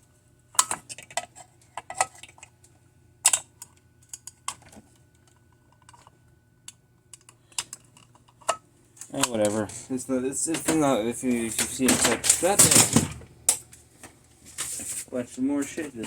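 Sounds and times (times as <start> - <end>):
small parts and tools clattering: 3.3 - 6.1, 10.5 - 15.1.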